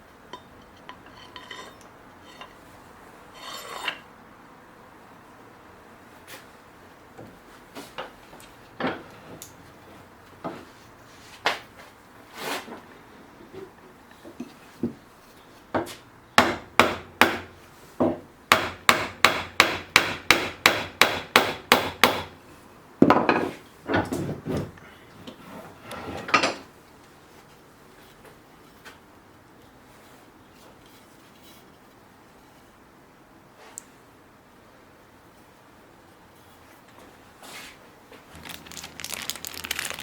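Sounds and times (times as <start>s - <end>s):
hammer striking wood: 16.4s - 22.3s.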